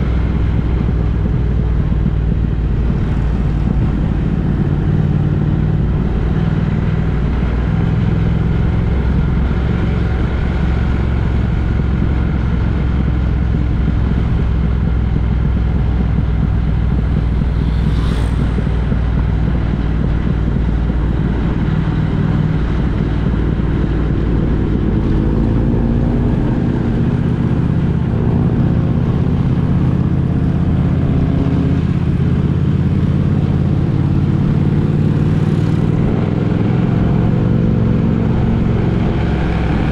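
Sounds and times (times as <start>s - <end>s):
vehicle engine and road noise: 0.0s - 39.9s
short sharp sound: 16.7s - 19.8s.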